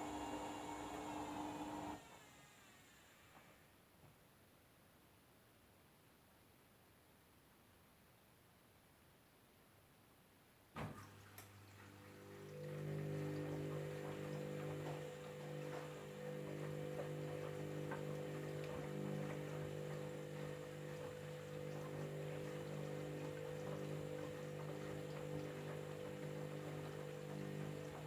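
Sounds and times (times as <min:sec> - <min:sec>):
drain pump humming: 0:00.0 - 0:02.1, 0:10.8 - 0:28.0
water ticks and trickles: 0:11.0 - 0:28.0.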